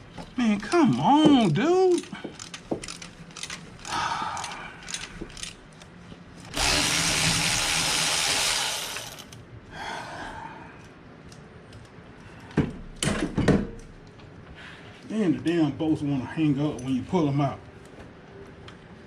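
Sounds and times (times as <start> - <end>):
handheld power tool running: 6.5 - 9.4.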